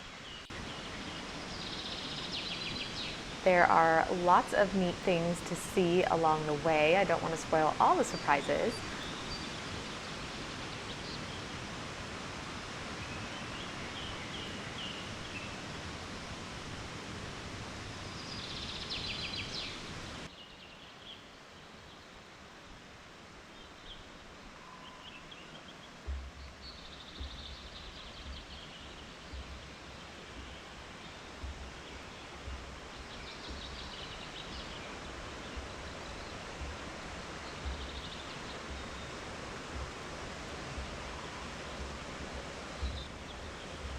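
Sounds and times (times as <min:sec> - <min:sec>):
birds chirping: 0:00.0 - 0:11.6, 0:12.8 - 0:16.5, 0:17.9 - 0:21.3, 0:23.5 - 0:43.9
steady rushing background noise: 0:22.4 - 0:43.9
low bumps and knocks: 0:29.2 - 0:41.1.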